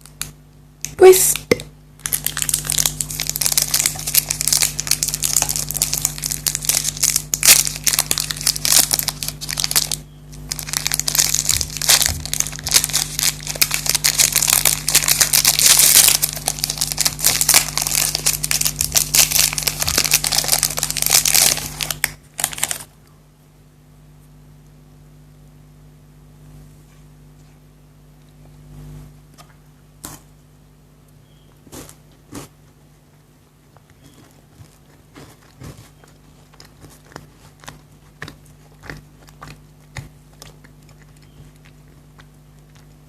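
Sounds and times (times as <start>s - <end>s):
wrapper crinkling: 2.0s - 22.9s.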